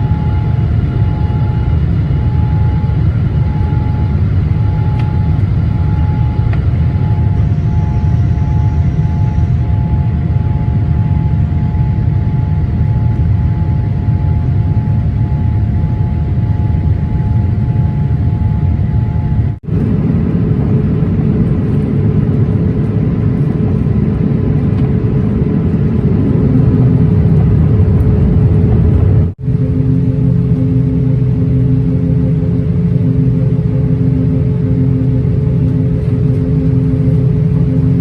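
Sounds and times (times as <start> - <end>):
faint whining tones: 0.0 - 38.0
jet engines roaring: 0.0 - 38.0.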